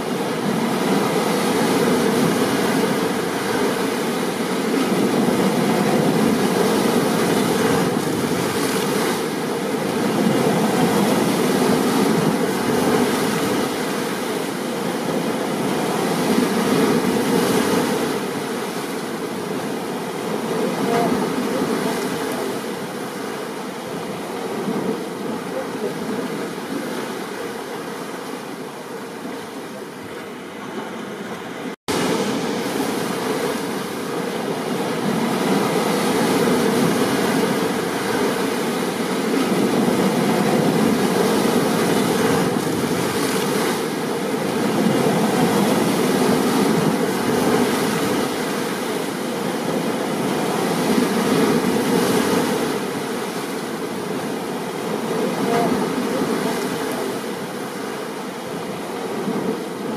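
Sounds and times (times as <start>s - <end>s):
ocean surf: 0.0s - 59.9s
steady rain: 31.9s - 59.9s.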